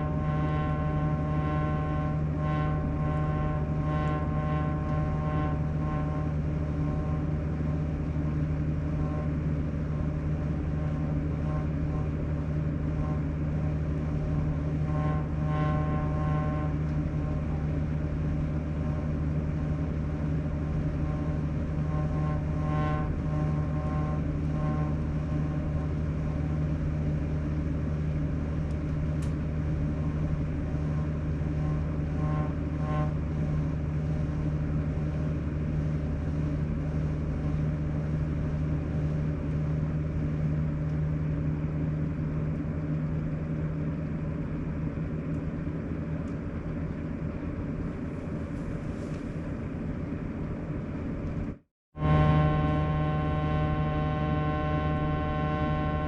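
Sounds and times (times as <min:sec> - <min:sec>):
higher tone: 0:52.0 - 0:56.0.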